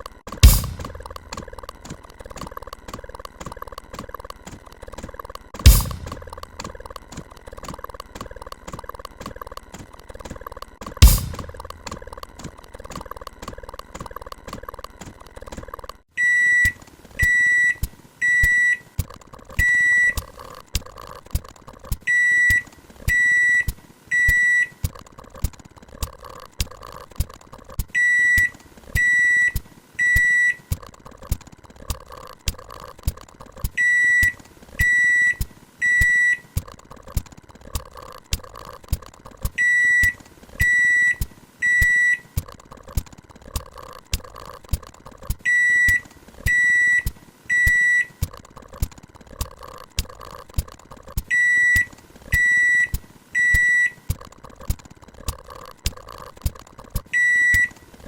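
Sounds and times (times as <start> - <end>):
microwave oven beeping: 0.0 - 20.6, 22.0 - 25.0, 27.9 - 30.9, 33.6 - 36.7, 39.5 - 42.6, 45.4 - 48.4, 51.2 - 54.2, 57.1 - 57.9
microwave oven humming: 0.0 - 20.6.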